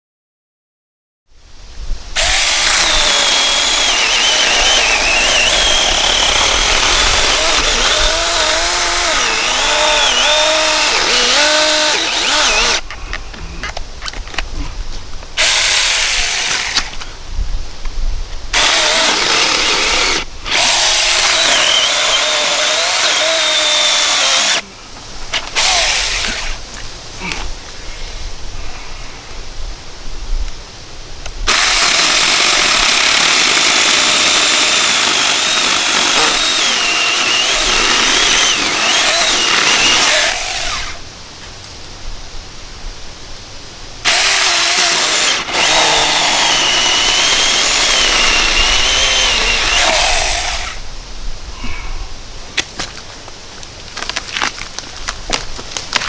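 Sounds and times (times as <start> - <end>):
electric chainsaw cutting log: 2.2 - 12.8, 15.4 - 17.0, 18.5 - 24.6, 25.3 - 26.6, 31.4 - 41.0, 44.0 - 50.8.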